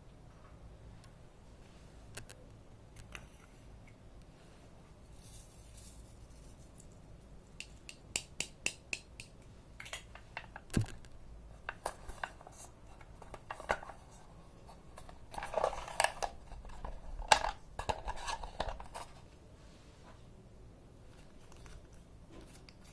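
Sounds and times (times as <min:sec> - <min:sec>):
scraping and rustling: 0:04.4 - 0:07.2, 0:11.6 - 0:20.3.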